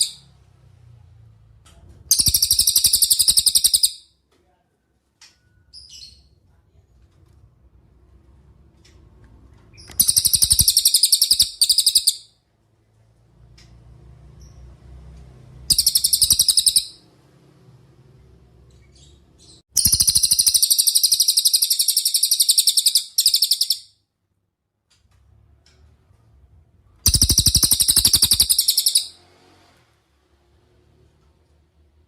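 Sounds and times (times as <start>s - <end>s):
songbird high-pitched trill: 2.1s - 4.0s, 10.0s - 12.2s, 15.7s - 17.0s, 19.8s - 23.9s, 27.1s - 29.1s.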